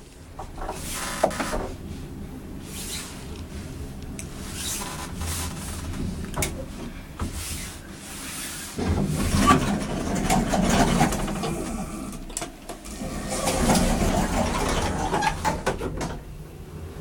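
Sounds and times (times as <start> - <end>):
elevator hoist machine drone: 0.0 - 17.0
elevator car rattling and clicking: 4.2 - 6.9, 8.8 - 16.5.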